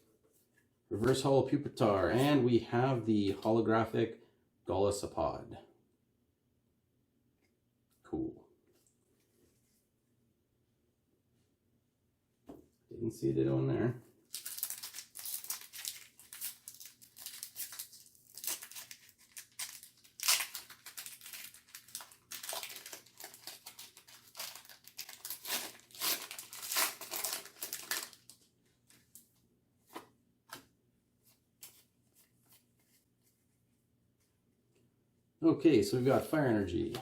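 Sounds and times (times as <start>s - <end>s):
foil wrapper tearing and crinkling: 14.3s - 28.4s.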